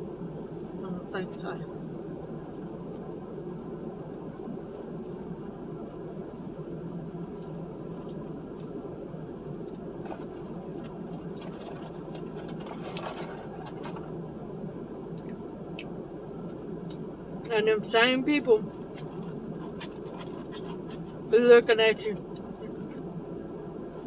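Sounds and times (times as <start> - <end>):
steady low hum: 0.0 - 24.0
person chewing food: 18.8 - 21.3.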